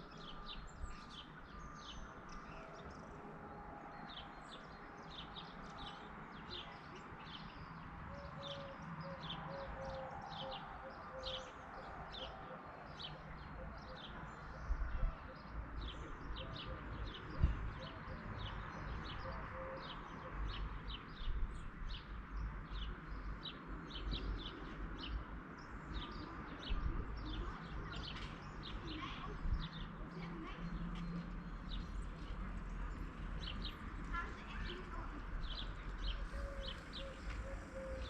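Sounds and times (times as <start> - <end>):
small birds chirping: 15.4 - 38.0.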